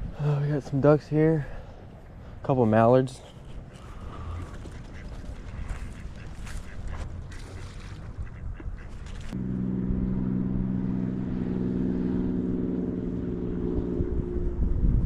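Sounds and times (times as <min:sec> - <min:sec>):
ducks quacking: 0:03.4 - 0:09.4
motor hum: 0:03.8 - 0:15.0.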